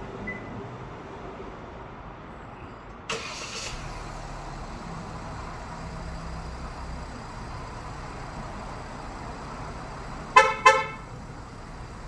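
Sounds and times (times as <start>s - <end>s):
car engine starting and idling: 3.1s - 12.0s.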